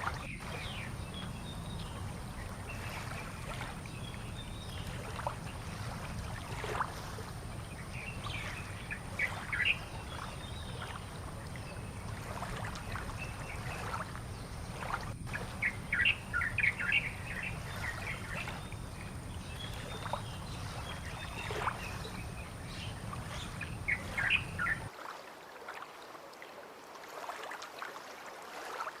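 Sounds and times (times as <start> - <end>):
steady low rumble: 0.0 - 24.9
small birds chirping: 7.6 - 24.9.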